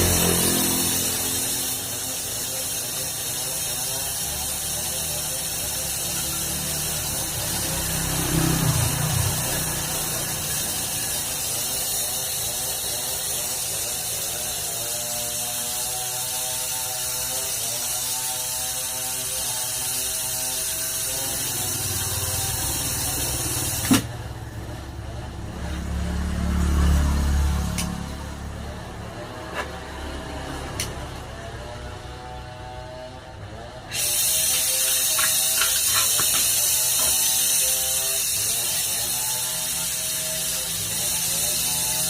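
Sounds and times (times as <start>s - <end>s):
gas torch hissing: 0.0s - 31.4s, 33.8s - 42.0s
sharp click: 27.7s - 28.0s, 30.8s - 31.0s.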